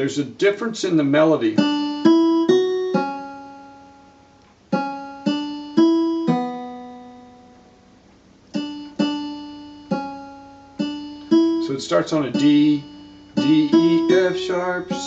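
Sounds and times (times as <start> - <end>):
keyboard guitar voice melody: 1.2 - 3.8, 8.6 - 15.0.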